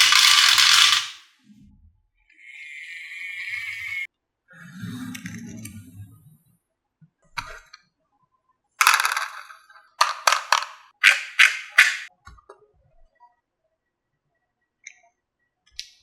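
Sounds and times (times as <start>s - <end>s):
marbles clattering and clacking: 0.0s - 1.2s, 8.8s - 12.1s
marbles rolling on track: 0.0s - 1.2s, 8.8s - 12.1s.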